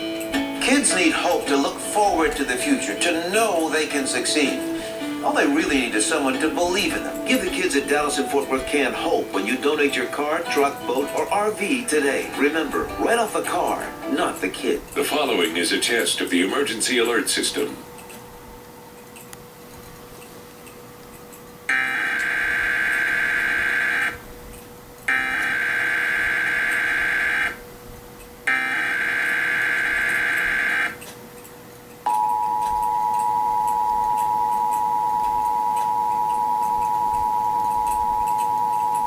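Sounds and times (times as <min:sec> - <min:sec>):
harsh buzzing data warble: 0:21.7 - 0:24.3, 0:25.1 - 0:27.7, 0:28.4 - 0:31.0
two-tone attention signal: 0:32.1 - 0:39.0.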